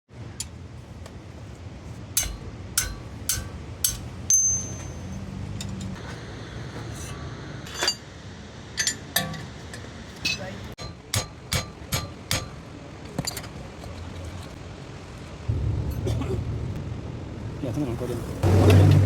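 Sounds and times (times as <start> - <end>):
steady low hum: 14.0 - 19.0.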